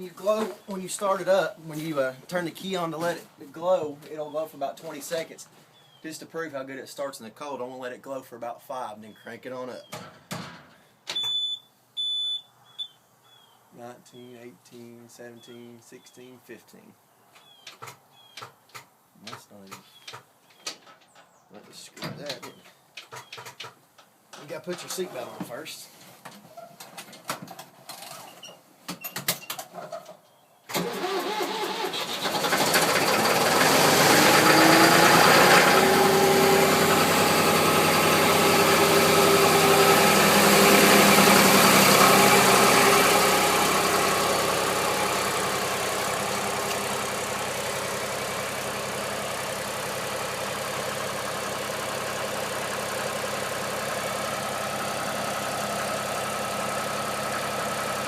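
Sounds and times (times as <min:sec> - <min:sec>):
diesel engine starting and idling: 0:30.7 - 0:58.0.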